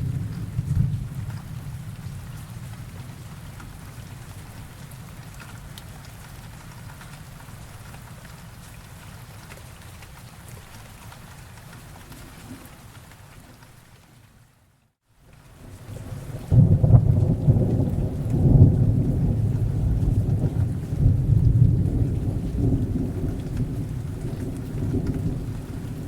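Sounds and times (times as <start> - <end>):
thunder rumble: 0.0 - 4.8, 15.9 - 26.0
steady rain falling: 0.0 - 26.0.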